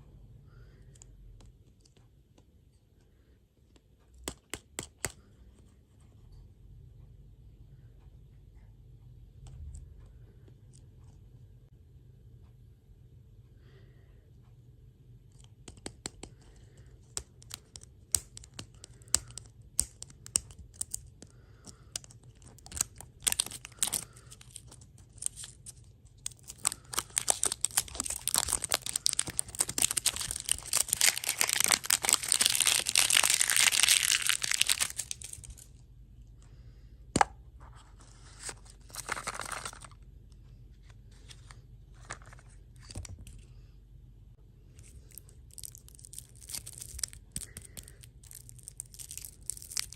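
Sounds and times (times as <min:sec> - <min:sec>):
packaging crinkling and tearing: 0:21.7 - 0:35.7, 0:38.4 - 0:40.0, 0:44.8 - 0:49.9.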